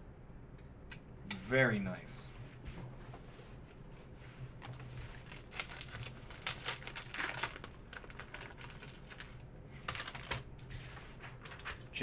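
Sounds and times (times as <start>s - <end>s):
plastic wrappers crinkling: 4.6s - 10.5s.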